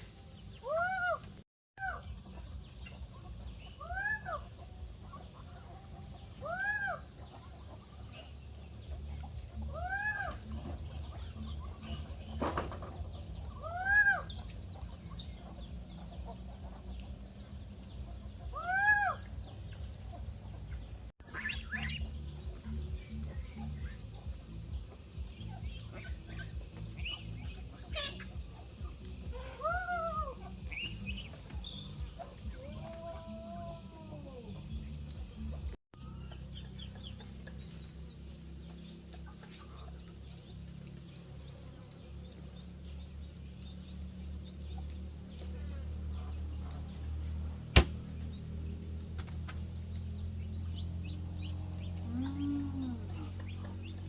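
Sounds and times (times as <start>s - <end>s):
chickens chirping and clucking: 0.0s - 54.0s
chicken calling: 2.8s - 8.4s, 9.2s - 17.2s, 17.8s - 34.7s.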